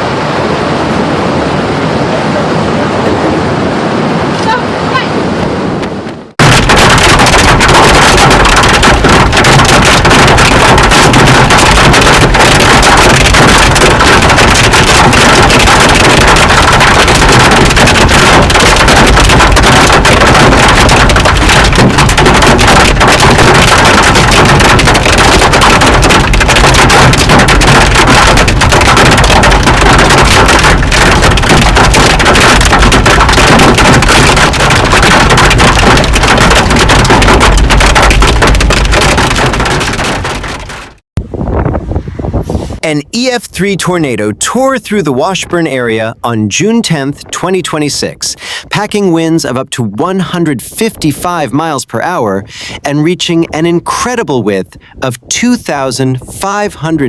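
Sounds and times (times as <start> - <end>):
wind buffeting microphone: 41.2 - 42.8.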